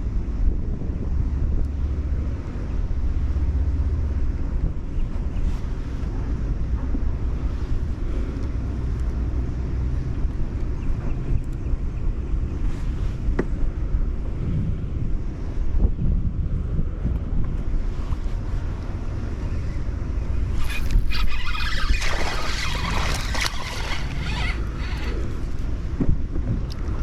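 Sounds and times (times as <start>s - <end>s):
wind buffeting microphone: 0.0s - 27.0s
faint water sounds: 17.7s - 27.0s.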